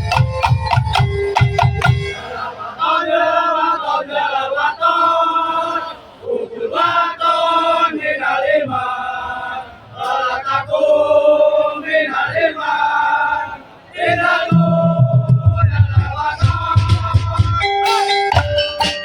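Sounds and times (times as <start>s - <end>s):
low drum beats: 0.0s - 2.2s, 14.5s - 19.0s
male voices chanting in unison: 1.8s - 17.8s.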